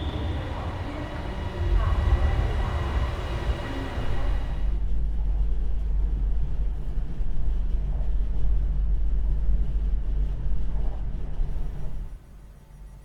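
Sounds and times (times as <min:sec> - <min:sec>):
electric train rumbling: 0:00.0 - 0:06.7.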